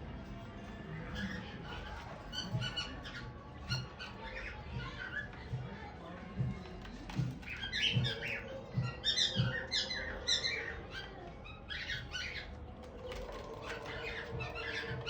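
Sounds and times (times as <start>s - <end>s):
cockatiels chirping: 1.1s - 5.3s, 7.2s - 15.0s.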